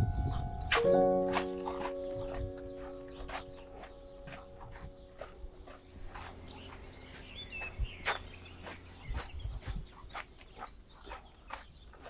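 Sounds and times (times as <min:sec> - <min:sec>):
birds chirping: 0:00.0 - 0:12.0
low thumps: 0:05.8 - 0:10.4.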